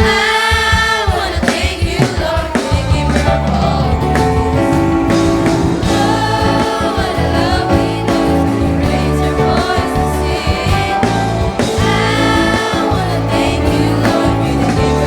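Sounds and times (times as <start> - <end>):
children's choir singing: 0.0 - 15.0
instrumental backing with beat: 0.0 - 15.0.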